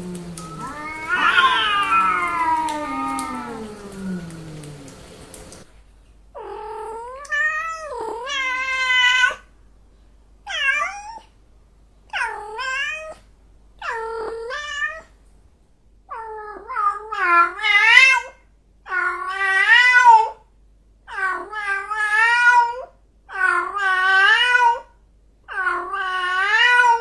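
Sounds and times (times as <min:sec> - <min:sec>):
cats yowling: 0:00.0 - 0:05.7, 0:25.5 - 0:27.0.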